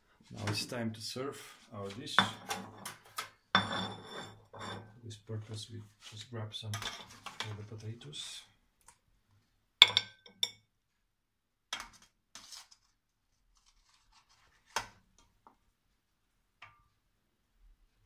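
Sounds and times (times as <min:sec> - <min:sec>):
cutlery clinking on dishes: 0:09.8 - 0:10.6.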